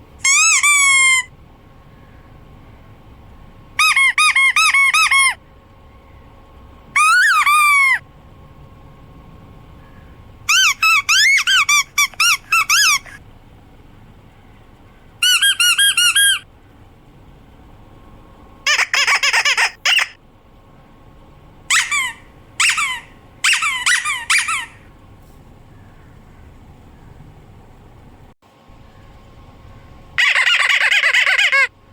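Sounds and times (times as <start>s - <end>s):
squeaky dog toy squeaking: 0.2s - 1.3s, 3.8s - 5.4s, 7.0s - 8.0s, 10.5s - 13.2s, 15.2s - 16.4s, 18.7s - 20.2s, 21.7s - 24.8s, 30.2s - 31.7s.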